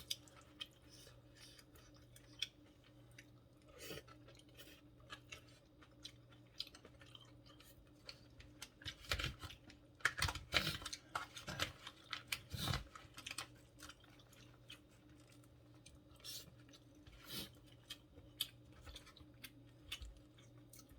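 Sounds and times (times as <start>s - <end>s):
person chewing food: 0.0s - 20.9s.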